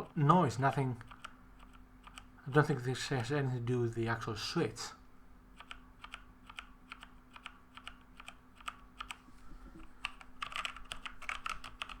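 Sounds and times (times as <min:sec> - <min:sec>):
keyboard typing clicks: 0:10.0 - 0:12.0.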